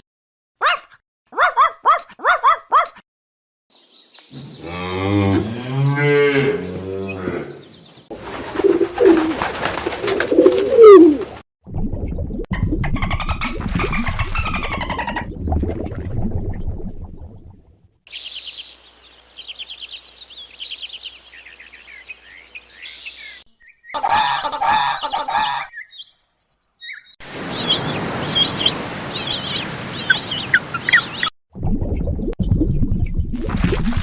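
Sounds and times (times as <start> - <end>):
small birds chirping: 3.7 - 5.1, 18.1 - 24.0, 24.9 - 31.3.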